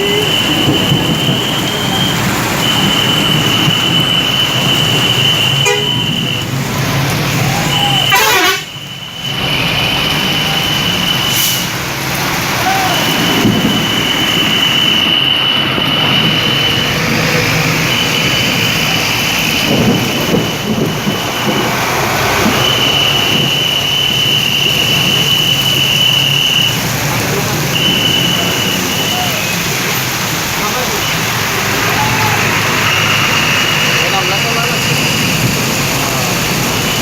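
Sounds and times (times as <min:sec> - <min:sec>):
traffic noise: 0:00.0 - 0:37.0
bus air horn: 0:04.5 - 0:06.4, 0:07.8 - 0:09.0, 0:11.3 - 0:11.8.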